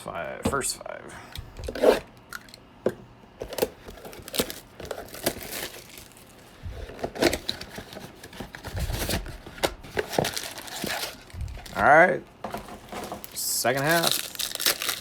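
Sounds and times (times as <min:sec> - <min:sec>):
packaging crinkling and tearing: 0:03.4 - 0:12.0, 0:12.6 - 0:15.0.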